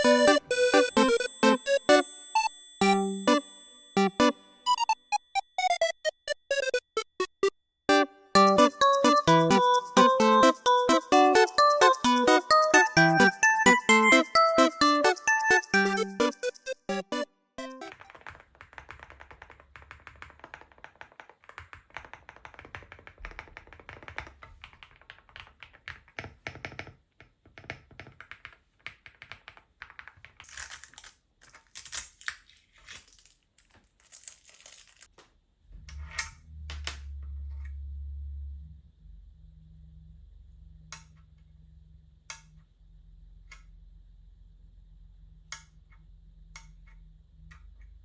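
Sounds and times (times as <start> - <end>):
mechanical keyboard clacking: 17.8 - 26.9
low steady hum: 35.6 - 48.0.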